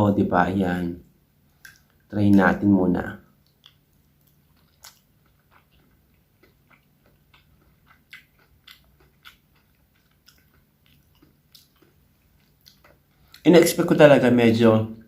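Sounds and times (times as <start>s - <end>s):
faint steady hum: 0.0s - 15.0s
mouth chewing clicks and smacks: 1.4s - 2.5s, 3.3s - 13.8s.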